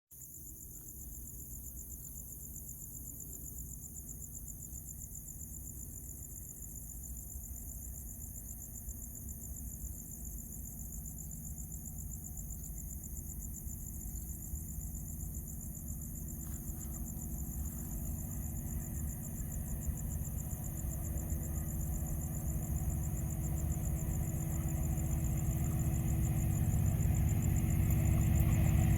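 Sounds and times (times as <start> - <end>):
insects chirring: 0.2 - 28.9
diesel locomotive rumble: 14.1 - 28.9.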